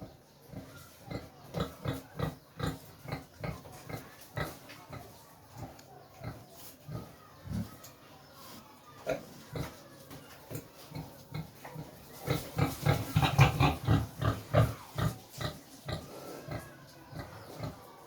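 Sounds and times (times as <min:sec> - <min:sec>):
pig grunting: 0:12.2 - 0:17.8.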